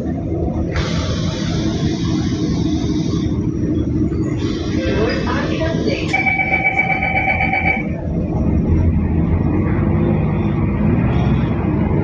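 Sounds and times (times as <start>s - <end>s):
bus engine drone: 0.0s - 12.0s
steady electronic tone: 0.8s - 8.3s.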